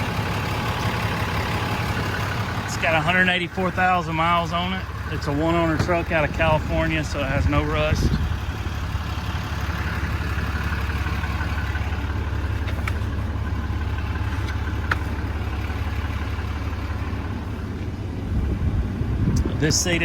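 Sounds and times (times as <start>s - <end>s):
diesel engine idling: 0.0s - 20.0s.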